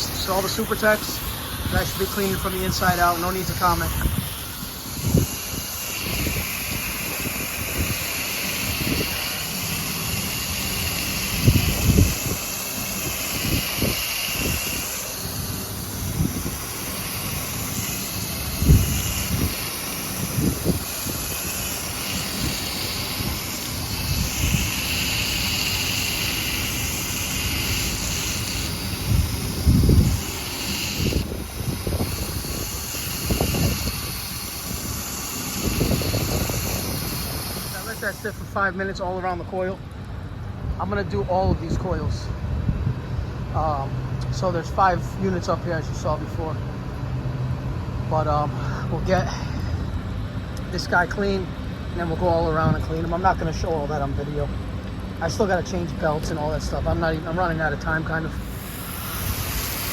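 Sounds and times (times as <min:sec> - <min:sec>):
spray hissing: 0:00.0 - 0:38.7, 0:57.7 - 0:59.9
wind buffeting microphone: 0:00.0 - 0:39.0, 0:39.8 - 0:43.5
steady rushing noise: 0:00.0 - 0:59.9.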